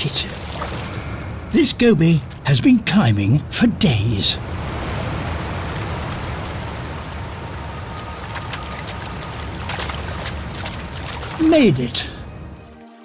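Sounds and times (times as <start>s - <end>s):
water drips and splashes: 0.0s - 1.3s, 4.4s - 13.0s
waterfall rushing: 4.4s - 12.2s.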